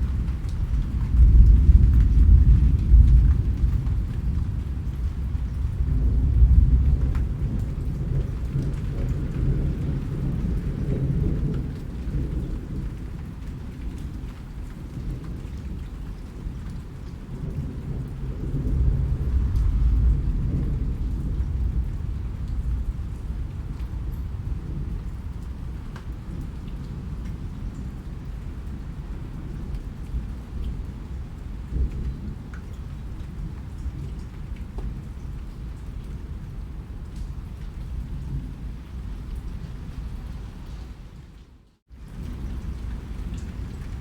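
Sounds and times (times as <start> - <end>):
rolling thunder: 0.0 - 14.1, 16.4 - 28.0
rain falling: 0.0 - 44.0.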